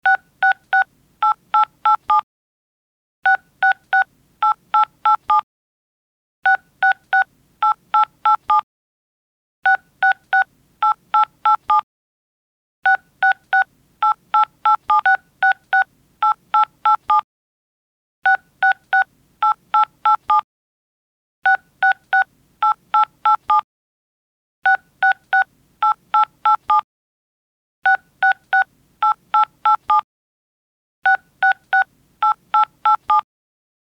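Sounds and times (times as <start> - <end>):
telephone keypad dialing tones: 0.1 - 2.2, 3.3 - 5.4, 6.5 - 8.6, 9.7 - 11.8, 12.9 - 17.2, 18.3 - 20.4, 21.5 - 23.6, 24.7 - 26.8, 27.9 - 30.0, 31.1 - 33.2.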